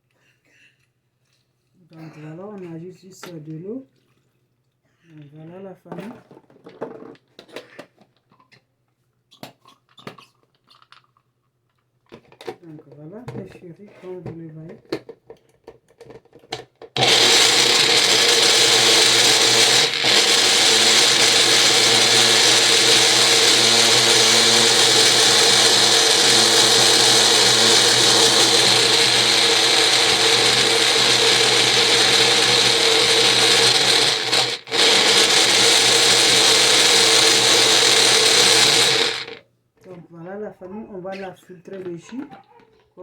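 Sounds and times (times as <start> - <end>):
electric blender running: 17.0 - 39.4.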